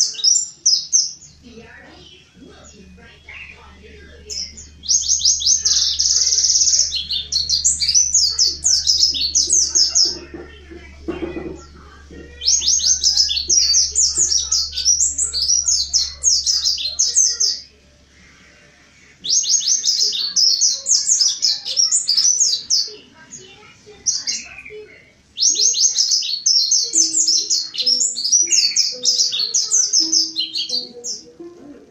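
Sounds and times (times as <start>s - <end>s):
bird singing high falling chirps: 2.6s - 10.3s, 12.3s - 17.7s, 24.1s - 31.2s.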